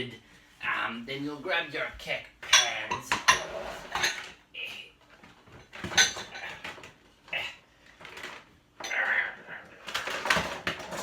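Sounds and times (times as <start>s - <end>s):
kitchenware clinking: 2.4s - 4.4s, 5.5s - 6.9s.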